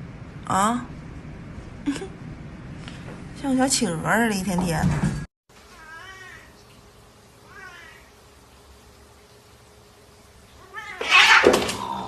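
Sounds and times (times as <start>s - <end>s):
cat meowing: 5.8s - 6.5s, 7.5s - 8.1s, 10.6s - 11.6s.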